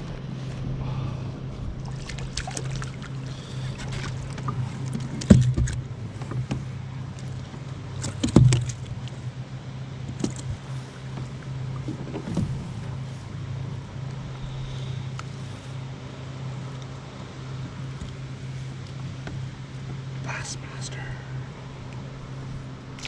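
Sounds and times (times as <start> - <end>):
low wind rumble: 0.0 - 23.0
knocks against kayak hull: 3.8 - 6.7, 8.0 - 8.9.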